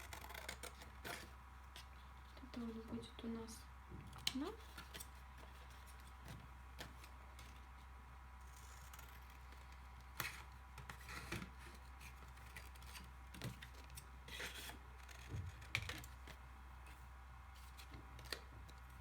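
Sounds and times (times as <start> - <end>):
scissors snipping paper: 0.0 - 1.9
faint steady hum: 0.0 - 19.0.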